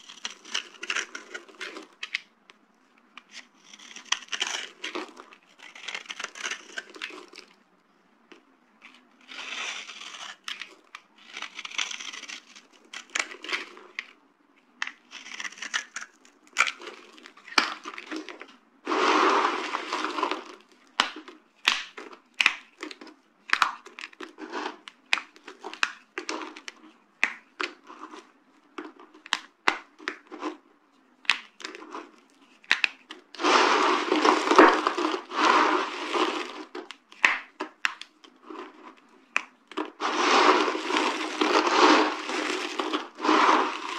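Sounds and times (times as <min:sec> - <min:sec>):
dry soap cracking and crunching: 0:00.0 - 0:43.9.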